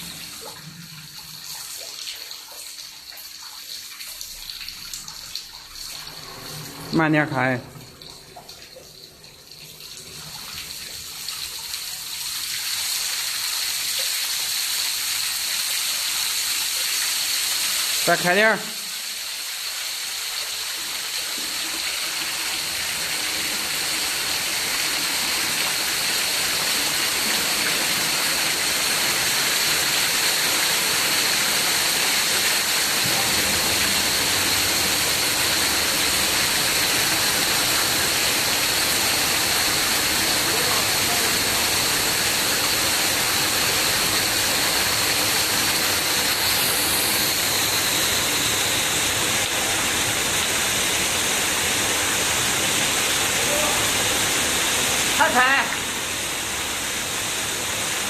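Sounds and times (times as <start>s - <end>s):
rushing hiss through valve: 12.7s - 58.0s.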